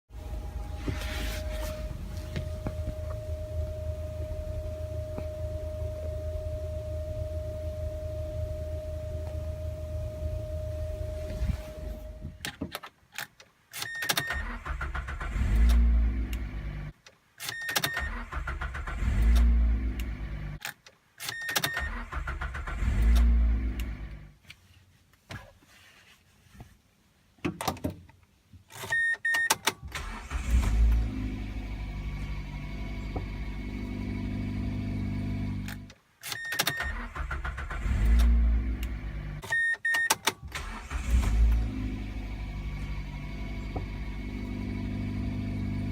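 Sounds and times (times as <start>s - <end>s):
car engine running: 0.1s - 12.4s, 40.6s - 45.9s
car engine starter cranking: 13.8s - 16.6s, 17.4s - 20.4s, 21.2s - 24.2s, 29.6s - 33.4s, 35.6s - 45.3s.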